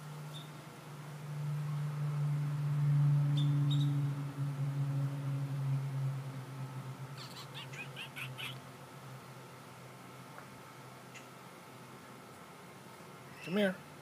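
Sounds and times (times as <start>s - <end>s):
low steady drone: 0.0s - 13.3s
short high chirping calls: 7.2s - 8.6s.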